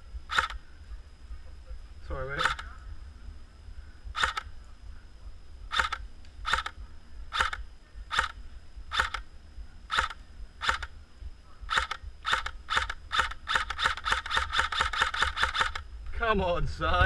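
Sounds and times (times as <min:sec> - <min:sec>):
airsoft gun shots: 0:11.7 - 0:15.8.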